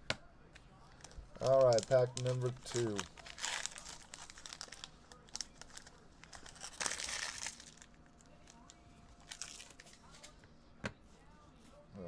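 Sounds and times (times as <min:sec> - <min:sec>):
wrapper crinkling and tearing: 0:00.8 - 0:10.4.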